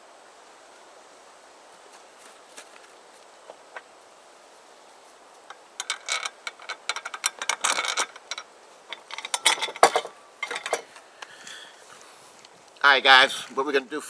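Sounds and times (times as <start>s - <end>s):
metal parts clicking and rattling: 5.5s - 11.0s.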